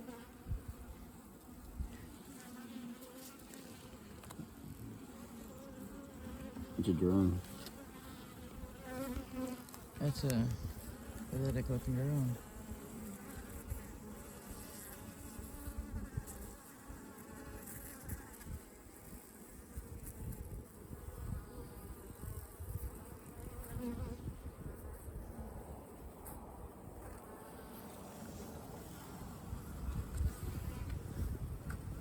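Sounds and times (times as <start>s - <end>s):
bees buzzing: 0.0s - 24.2s.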